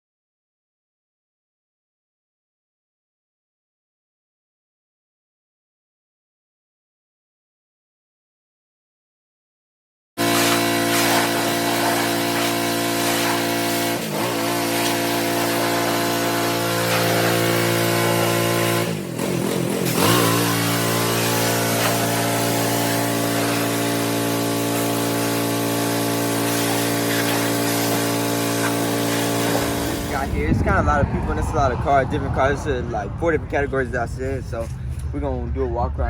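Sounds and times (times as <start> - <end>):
engine running: 10.2 - 35.5.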